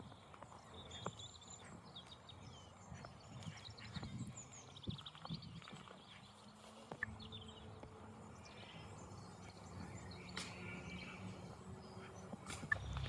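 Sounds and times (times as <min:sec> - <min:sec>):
small birds chirping: 0:00.0 - 0:13.0
low steady rumble: 0:12.7 - 0:13.0.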